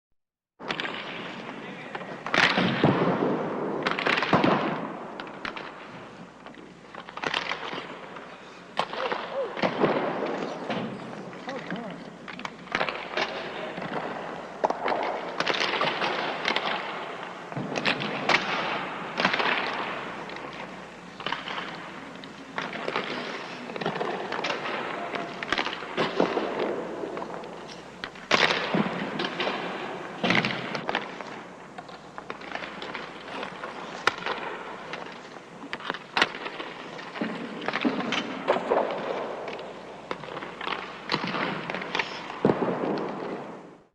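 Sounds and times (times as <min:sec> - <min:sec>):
hockey stick hitting puck: 0:00.6 - 0:43.9
arena noise: 0:03.8 - 0:43.3.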